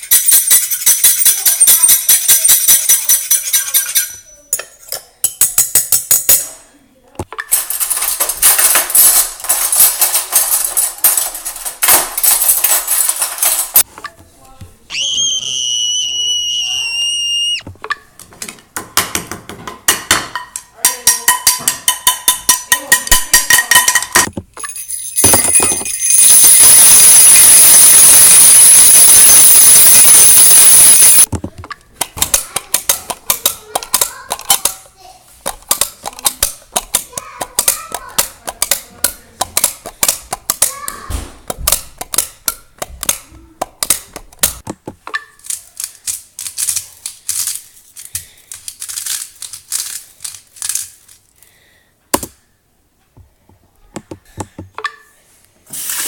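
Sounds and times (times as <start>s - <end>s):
shrill high tone: 14.9s - 17.6s, 25.8s - 31.3s.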